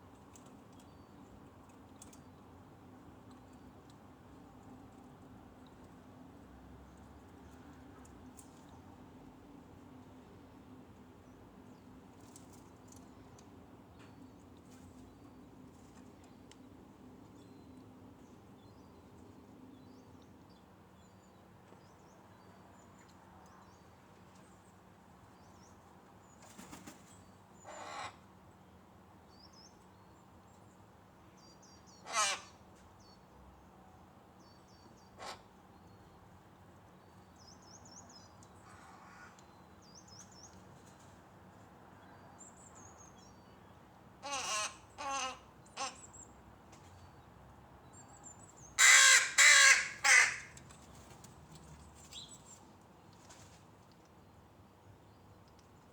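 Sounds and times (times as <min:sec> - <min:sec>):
crow cawing: 0:32.1 - 0:32.5, 0:44.2 - 0:46.0, 0:48.8 - 0:50.5
faint small birds chirping: 0:50.6 - 0:55.9.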